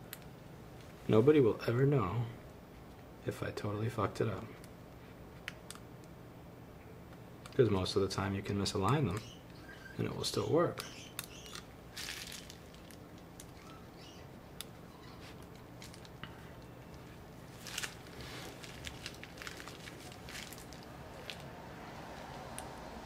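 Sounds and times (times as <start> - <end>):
small clicks and rustles of handling: 14.6 - 21.5.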